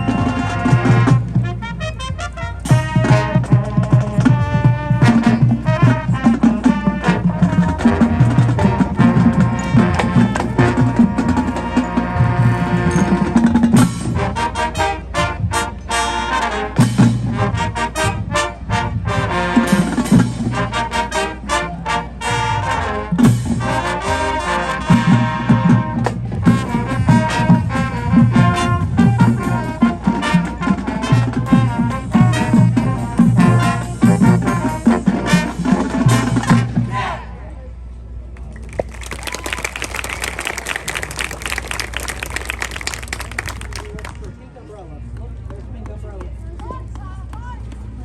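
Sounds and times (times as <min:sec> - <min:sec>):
marching band brass chords: 0:00.0 - 0:13.3.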